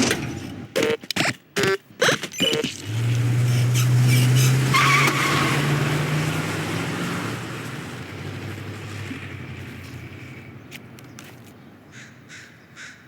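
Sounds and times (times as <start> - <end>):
car engine revving: 2.7 - 10.4
tyre screech: 3.6 - 5.7.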